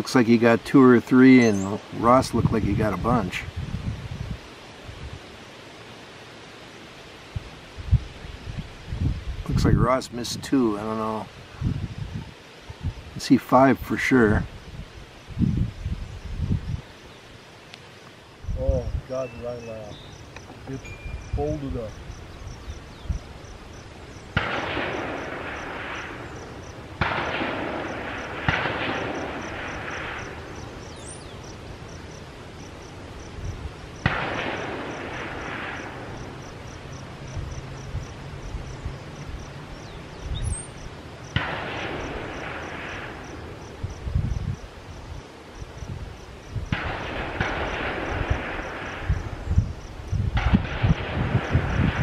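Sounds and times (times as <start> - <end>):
rifle shots with echo: 24.3 - 30.8, 34.0 - 36.4, 41.3 - 43.5, 46.7 - 49.3, 50.4 - 52.0.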